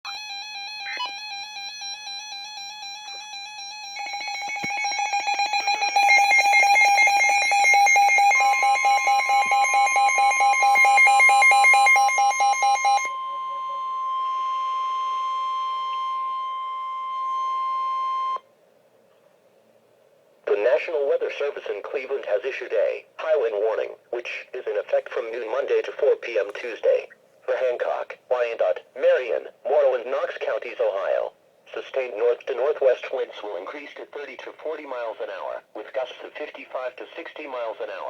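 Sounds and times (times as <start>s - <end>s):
warbling alarm: 0.1s - 18.4s
steady alert tone: 4.0s - 14.4s
fast pulsing beep: 4.3s - 14.7s.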